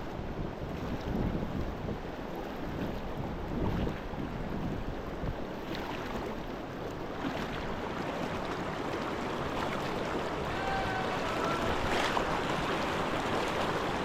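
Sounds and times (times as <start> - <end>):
wind buffeting microphone: 0.2 - 5.6, 7.8 - 14.0
river rushing: 7.1 - 14.0.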